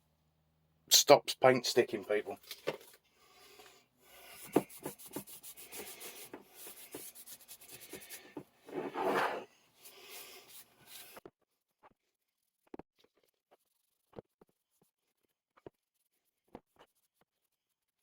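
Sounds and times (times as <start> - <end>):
hand rubbing on metal vise: 4.2 - 11.2.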